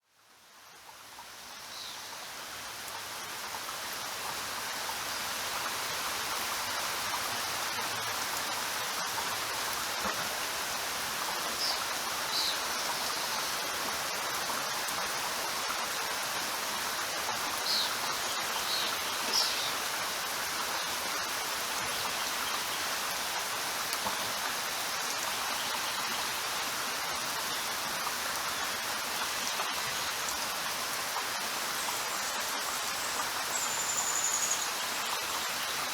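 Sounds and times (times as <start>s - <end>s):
steady rain hiss: 0.0s - 35.9s.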